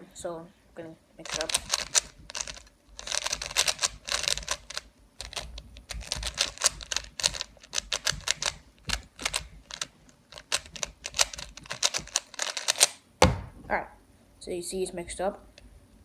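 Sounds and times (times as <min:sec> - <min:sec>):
puzzle cube layers clicking: 0:01.2 - 0:13.0.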